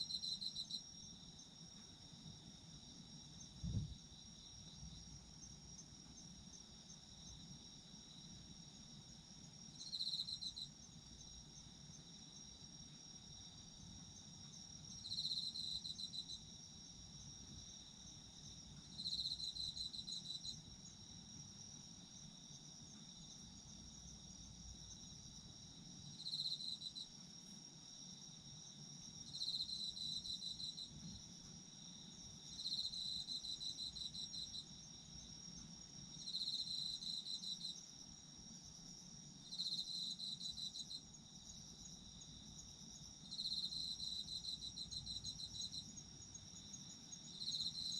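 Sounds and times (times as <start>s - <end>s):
insects high-pitched trill: 28.1s - 47.9s.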